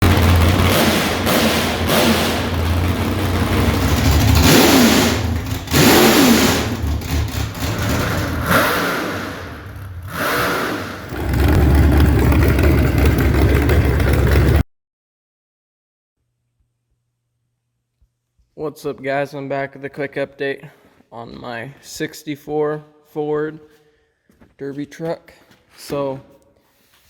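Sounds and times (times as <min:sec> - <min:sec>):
vehicle engine revving: 0:00.0 - 0:14.6.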